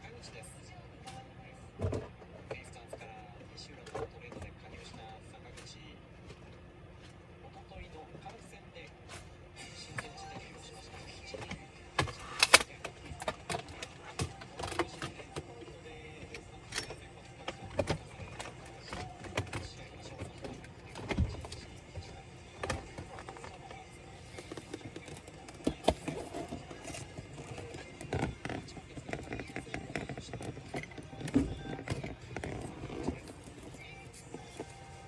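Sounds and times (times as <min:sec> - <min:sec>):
laptop parts clicking and knocking: 0:16.2 - 0:34.8.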